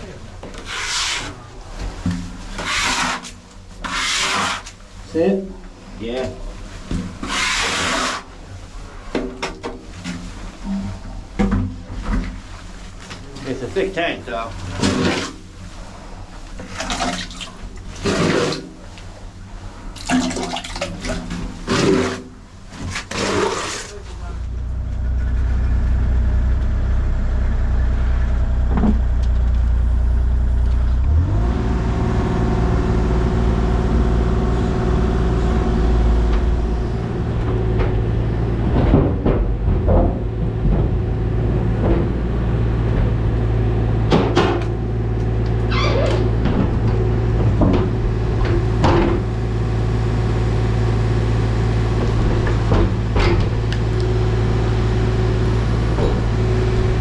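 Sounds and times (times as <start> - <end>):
heavy machine engine running: 23.9 - 57.0.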